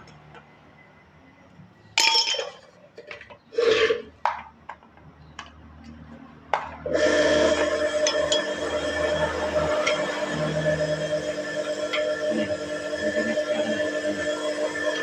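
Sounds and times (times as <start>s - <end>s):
metal scrape: 3.5s - 4.1s.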